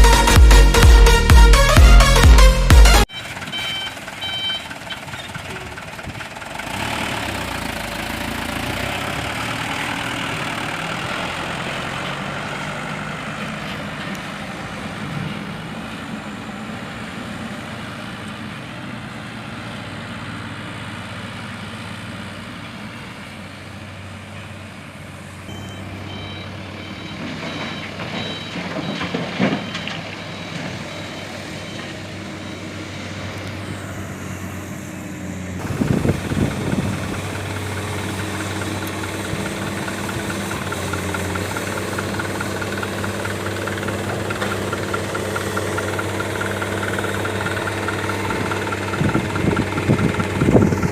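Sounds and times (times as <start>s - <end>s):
dump truck diesel engine: 0.0s - 50.9s
reversing alarm beeping: 3.1s - 5.4s, 25.5s - 33.3s.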